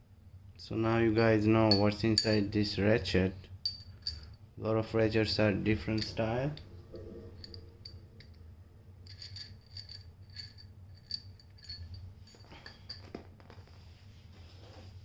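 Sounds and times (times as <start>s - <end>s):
small metal parts clinking: 1.2s - 2.5s, 3.6s - 4.4s, 9.0s - 13.3s.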